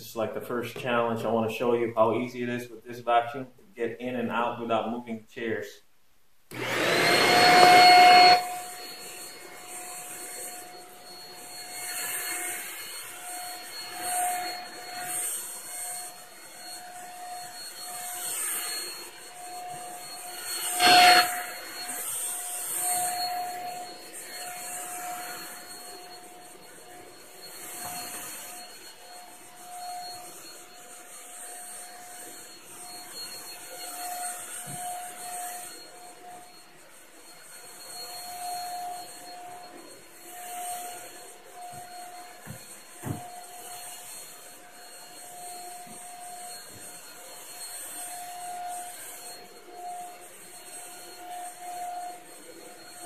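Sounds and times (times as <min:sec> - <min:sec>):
stick vacuum running: 0:06.5 - 0:16.4.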